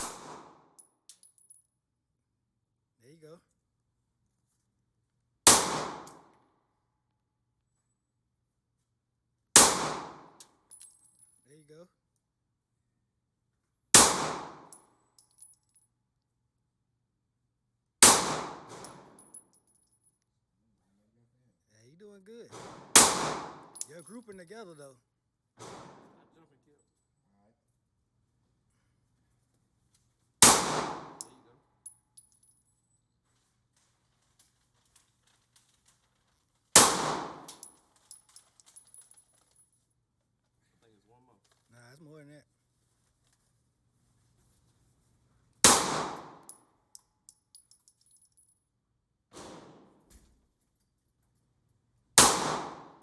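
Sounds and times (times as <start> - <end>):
echoing gunshots: 0.0 - 0.5, 5.5 - 6.2, 9.6 - 10.3, 14.0 - 14.7, 18.0 - 18.9, 22.6 - 23.7, 30.4 - 31.2, 36.8 - 37.5, 45.7 - 46.4, 52.2 - 53.0
light metallic clinks: 0.8 - 1.7, 10.7 - 11.6, 14.7 - 15.9, 18.8 - 20.3, 23.7 - 24.5, 31.2 - 33.0, 37.4 - 39.9, 46.2 - 48.6
light metallic tinks: 1.1 - 1.7, 10.7 - 11.5, 31.2 - 33.0, 37.5 - 39.9, 46.4 - 48.6.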